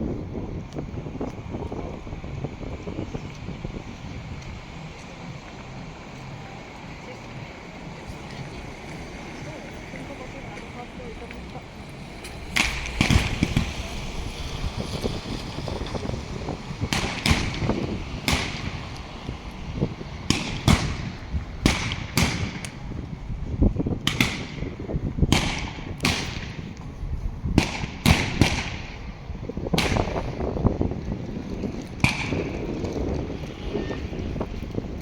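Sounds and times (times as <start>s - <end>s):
fireworks bursting with echo: 12.4s - 14.4s, 16.7s - 19.2s, 20.2s - 23.0s, 24.1s - 26.8s, 27.6s - 29.1s.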